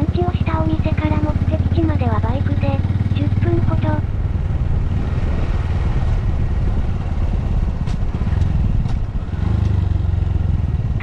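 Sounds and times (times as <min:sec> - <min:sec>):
motorcycle engine running: 0:00.0 - 0:11.0
wind on microphone: 0:00.0 - 0:11.0.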